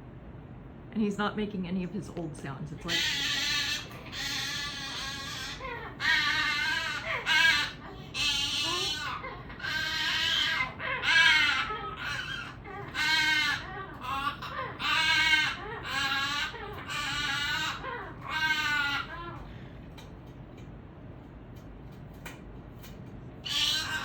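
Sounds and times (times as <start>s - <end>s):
cockatoo calling: 2.8s - 19.8s, 23.4s - 24.0s.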